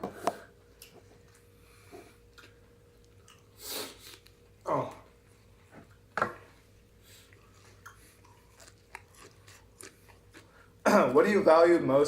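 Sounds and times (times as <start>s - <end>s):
person chewing food: 0.8s - 4.6s, 7.1s - 10.8s.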